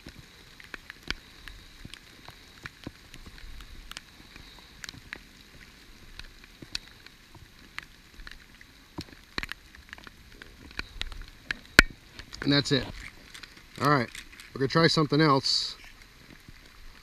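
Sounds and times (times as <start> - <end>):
heavy rain pouring: 0.0 - 17.0
raindrops tapping: 0.0 - 17.0.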